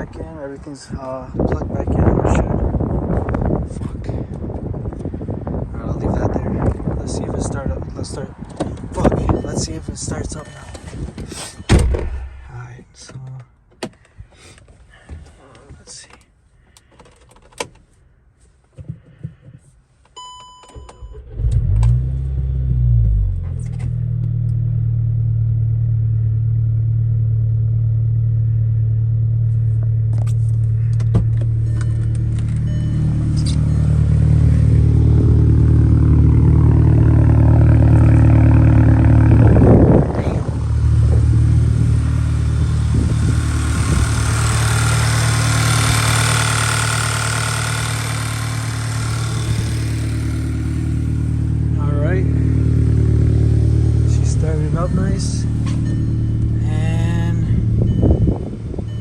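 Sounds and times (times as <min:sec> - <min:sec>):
wind buffeting microphone: 0:01.3 - 0:11.3, 0:38.4 - 0:46.1, 0:57.6 - 0:59.0
car engine idling: 0:22.2 - 0:59.0.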